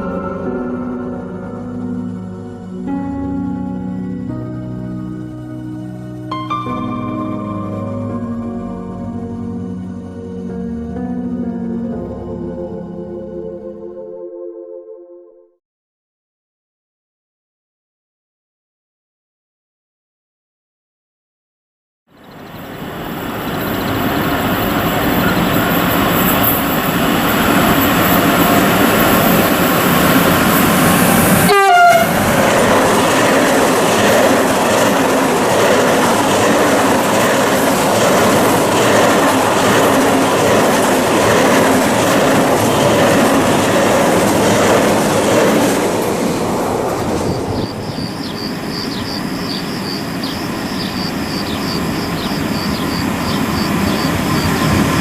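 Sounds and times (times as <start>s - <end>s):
train horn: 28.0s - 33.1s.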